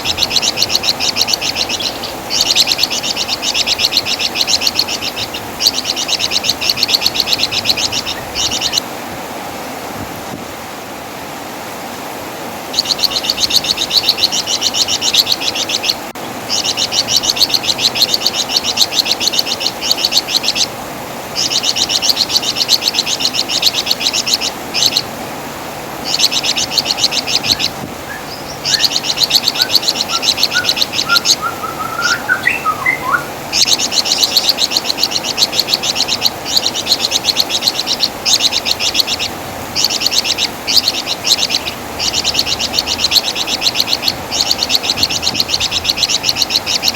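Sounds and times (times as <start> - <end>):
songbird chattering trill: 0.0 - 8.8, 12.8 - 20.8, 21.4 - 25.1, 26.0 - 46.9
faint rising bird whistles: 26.1 - 39.2.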